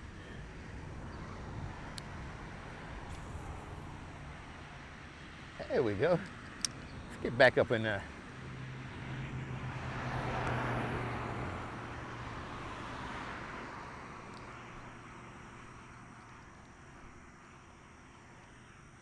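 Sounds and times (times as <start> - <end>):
vehicle passing by: 0.0 - 16.1.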